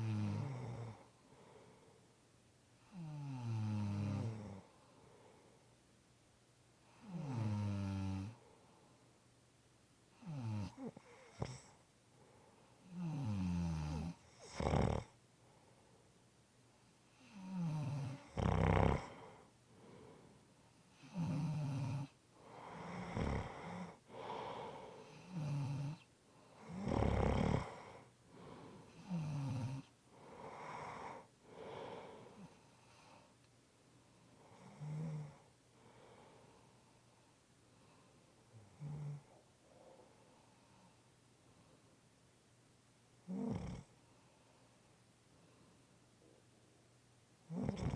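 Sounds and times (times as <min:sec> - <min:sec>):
person snoring: 0:17.3 - 0:19.3, 0:21.1 - 0:26.0, 0:26.7 - 0:32.5, 0:47.5 - 0:47.9.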